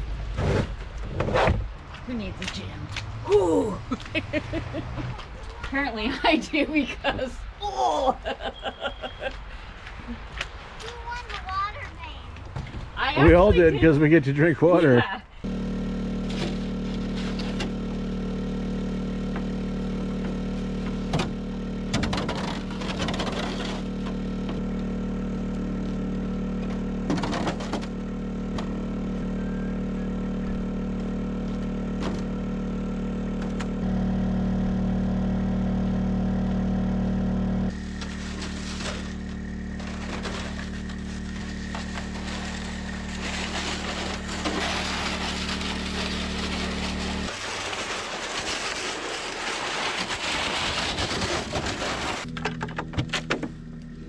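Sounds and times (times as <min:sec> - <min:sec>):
vehicle engine droning: 0:15.4 - 0:54.0.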